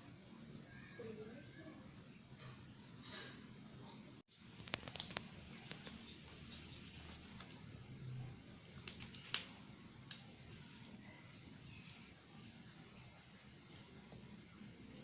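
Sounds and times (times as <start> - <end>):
small objects clicking and tapping: 4.5 - 10.4.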